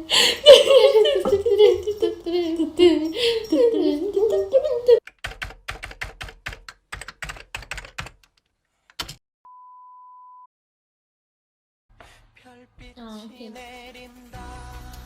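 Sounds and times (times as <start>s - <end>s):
rapid keyboard typing: 4.4s - 9.2s.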